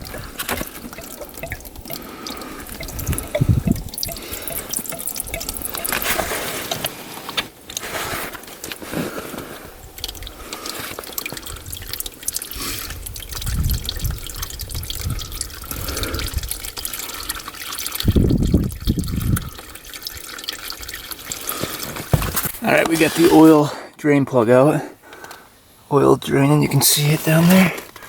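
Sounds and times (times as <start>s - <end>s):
dull low knocks: 0.0s - 6.0s
fluid trickling into a pan: 0.0s - 23.5s
dripping: 0.0s - 23.6s.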